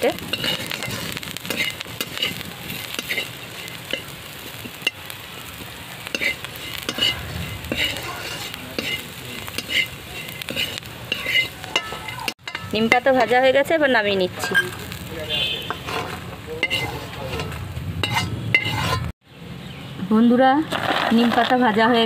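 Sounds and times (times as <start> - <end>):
spatula scraping pan: 0.0 - 5.1, 6.0 - 13.6, 14.3 - 19.2
food sizzling in oil: 0.0 - 19.2.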